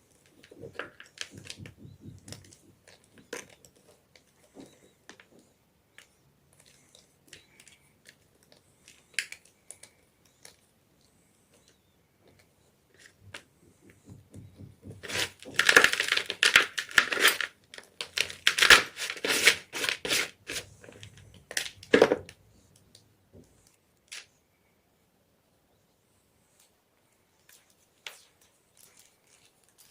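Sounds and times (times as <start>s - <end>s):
chalk crunching: 18.3s - 20.9s.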